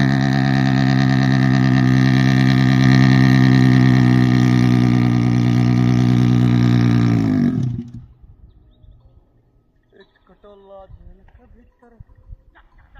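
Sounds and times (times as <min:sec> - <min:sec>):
motorcycle engine running: 0:00.0 - 0:08.2.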